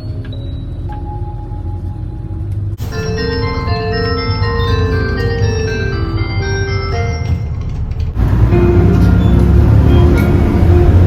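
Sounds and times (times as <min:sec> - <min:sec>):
bus engine rumble: 0:00.0 - 0:11.0
electronic chime melody: 0:02.8 - 0:07.5.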